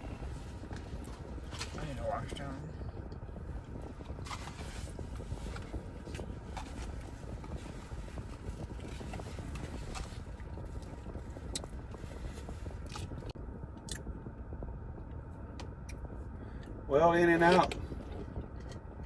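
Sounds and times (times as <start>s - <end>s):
steady low rumble: 0.0s - 19.0s
person chewing a burger: 8.3s - 14.1s.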